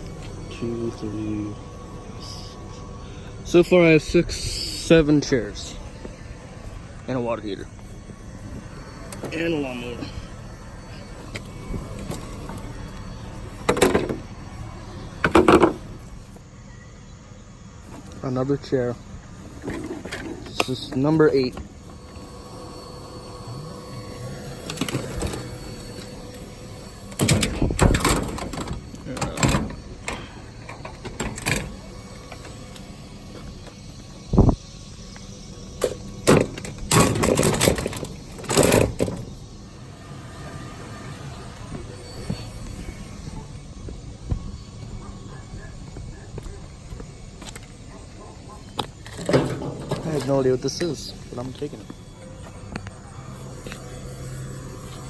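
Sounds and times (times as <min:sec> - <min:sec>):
rattling scraping clatter: 0:19.4 - 0:33.9, 0:35.8 - 0:39.5, 0:48.6 - 0:52.5
scrap metal clanking: 0:49.0 - 0:50.6
metal chair clattering: 0:49.1 - 0:50.4.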